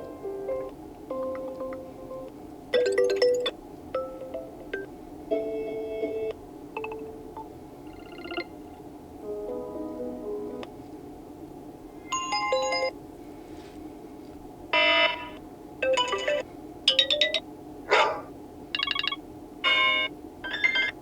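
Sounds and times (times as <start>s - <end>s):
phone ringtone snippets: 7.9s - 8.5s, 12.1s - 12.9s, 15.9s - 16.4s, 18.8s - 20.9s.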